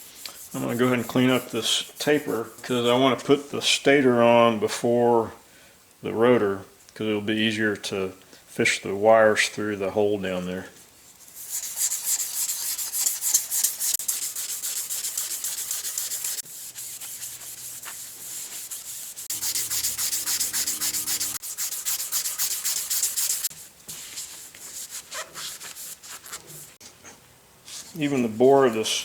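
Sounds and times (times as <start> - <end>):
hand sanding steel: 0.0 - 2.6, 11.3 - 23.7.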